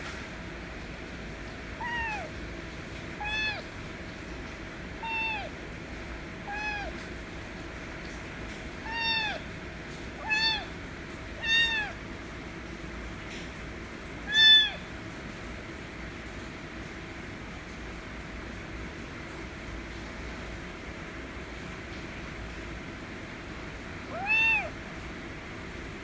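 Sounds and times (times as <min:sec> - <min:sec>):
kitten meowing: 0:01.8 - 0:02.4, 0:03.2 - 0:03.8, 0:05.0 - 0:05.6, 0:06.4 - 0:07.0, 0:08.8 - 0:09.5, 0:10.2 - 0:10.8, 0:11.4 - 0:12.0, 0:14.2 - 0:14.9, 0:24.1 - 0:24.8.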